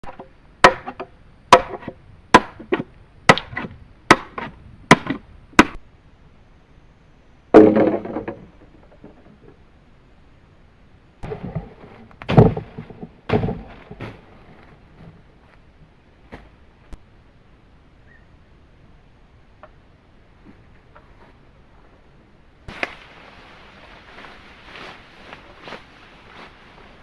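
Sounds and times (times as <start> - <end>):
blade chopping wood: 0.1 - 5.8, 7.6 - 8.4, 11.2 - 14.2
heavy wood crack: 11.2 - 14.3.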